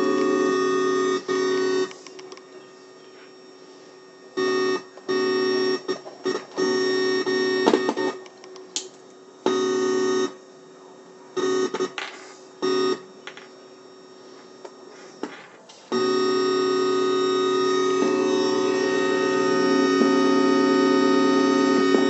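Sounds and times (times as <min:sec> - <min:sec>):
buzzy electronic synthesizer tones: 0:00.0 - 0:08.4, 0:09.2 - 0:15.2, 0:15.9 - 0:22.0
faint hum: 0:00.0 - 0:22.0.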